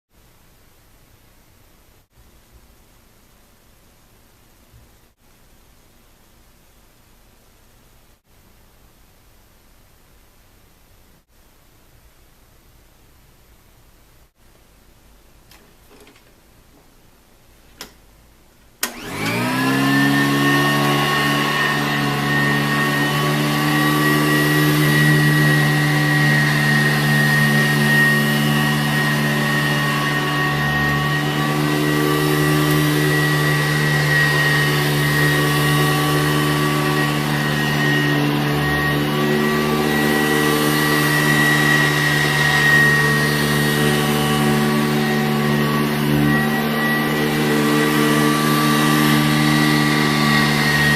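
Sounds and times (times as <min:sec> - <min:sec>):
upright vacuum cleaner whining: 0:18.8 - 0:50.9.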